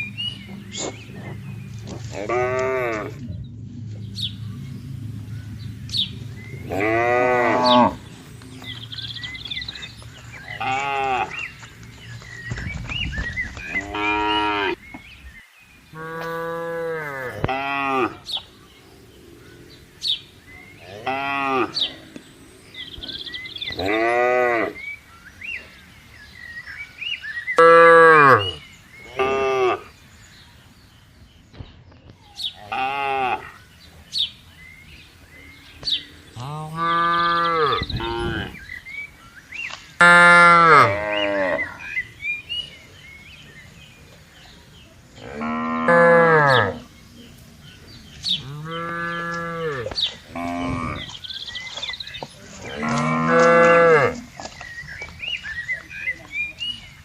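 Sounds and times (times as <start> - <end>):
cattle mooing: 0.4 - 3.3, 6.1 - 8.1, 10.5 - 11.5, 16.0 - 18.2, 20.8 - 22.2, 22.8 - 24.8, 36.2 - 38.6, 40.0 - 41.9, 45.2 - 46.9, 48.4 - 51.2, 52.6 - 54.3.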